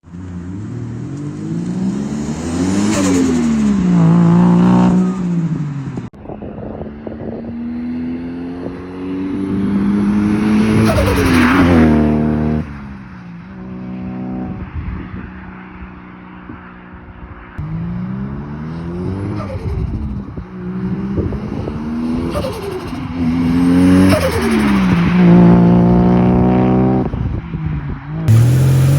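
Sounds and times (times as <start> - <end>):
car engine revving: 0.0 - 6.0, 28.3 - 28.9.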